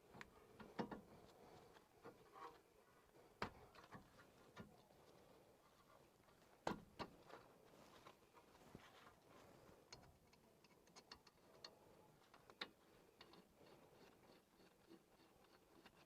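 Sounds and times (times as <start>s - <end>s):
faint light clicks and taps: 9.8s - 14.4s.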